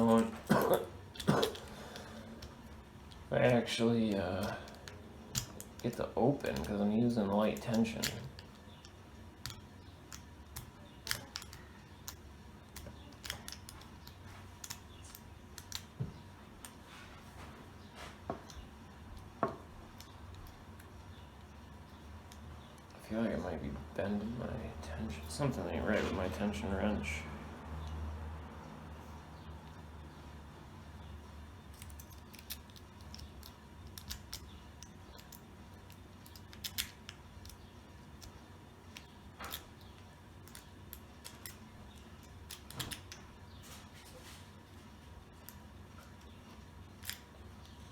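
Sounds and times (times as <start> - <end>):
metal rake clicking in a padlock: 3.1 - 12.2, 31.7 - 38.3.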